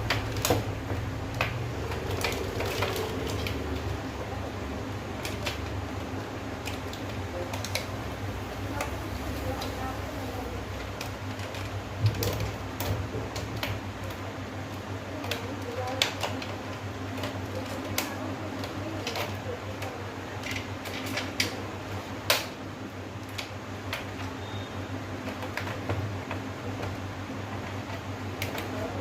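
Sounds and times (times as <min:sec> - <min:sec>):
plastic parts clicking: 0:00.0 - 0:08.0, 0:10.7 - 0:21.6, 0:25.2 - 0:29.0.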